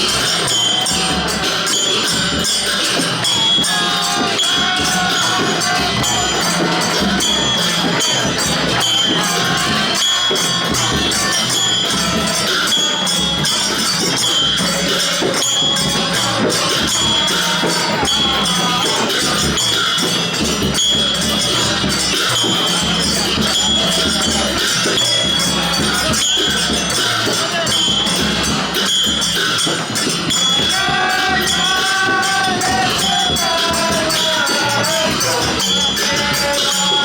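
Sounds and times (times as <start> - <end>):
drums: 0.0 - 37.0
jingling cymbals: 0.0 - 37.0.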